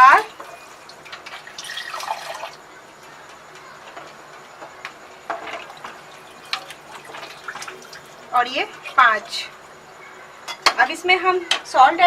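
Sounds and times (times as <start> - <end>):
water pouring into a pot: 0.0 - 2.6, 5.4 - 9.4.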